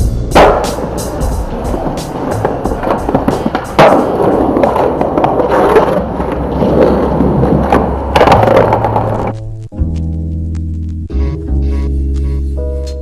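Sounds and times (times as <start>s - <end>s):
background music with bass line: 0.0s - 13.0s
skateboard clacks: 0.4s - 9.4s
skateboard wheels rolling on pavement: 0.4s - 9.6s.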